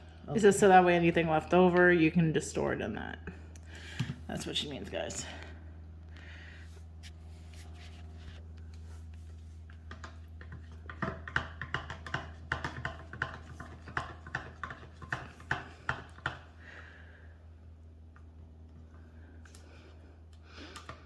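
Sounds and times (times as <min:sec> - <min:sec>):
steady low hum: 0:00.0 - 0:21.0
spoon tapping a container: 0:10.9 - 0:16.4.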